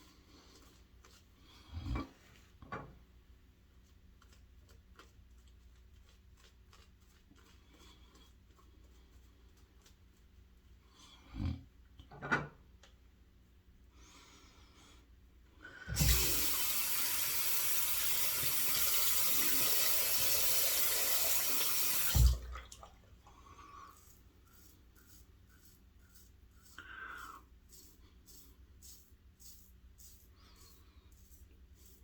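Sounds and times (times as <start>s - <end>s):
water running from tap: 16.0s - 23.0s.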